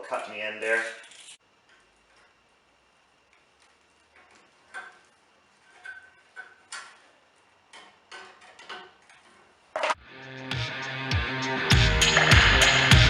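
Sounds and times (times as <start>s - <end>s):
hand tools clicking and snipping: 3.3s - 10.0s
music: 10.0s - 13.0s.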